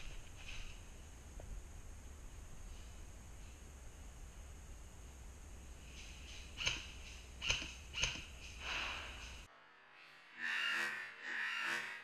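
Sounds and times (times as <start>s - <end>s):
faint low rumble and hiss: 0.0s - 7.4s.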